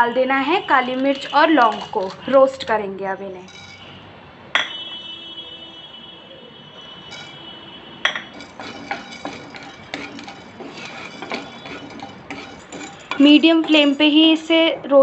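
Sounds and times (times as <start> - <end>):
spices clinking in a hot pan: 0.7 - 2.3, 7.1 - 7.4, 8.1 - 14.5.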